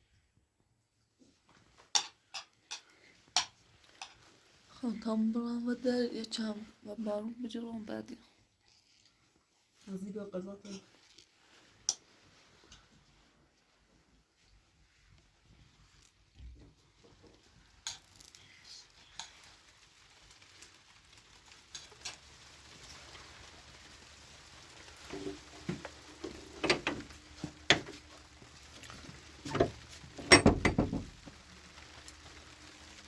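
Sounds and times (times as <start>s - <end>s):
household objects clicking and knocking: 1.8s - 4.2s, 24.9s - 31.4s.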